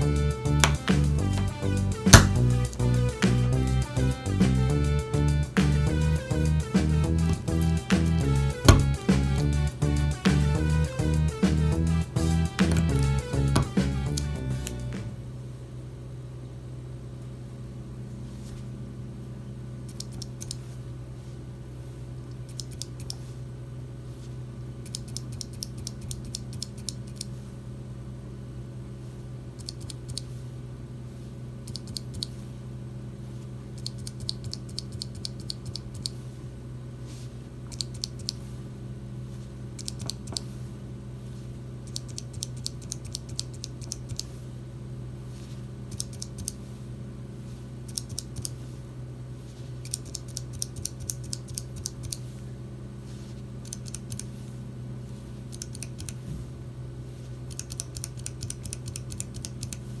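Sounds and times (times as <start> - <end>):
steady low hum: 0.0 - 60.0
mechanical keyboard clicking: 57.5 - 59.8.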